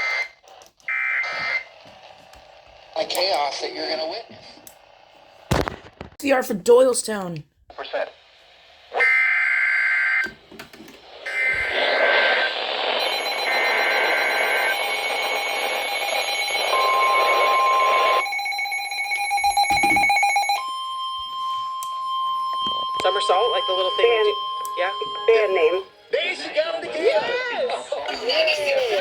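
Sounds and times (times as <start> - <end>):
overlapping noisy alert audio: 11.3 - 20.4
screeching data header bursts: 13.0 - 20.0
steady single-pitch alert tone: 13.0 - 21.0.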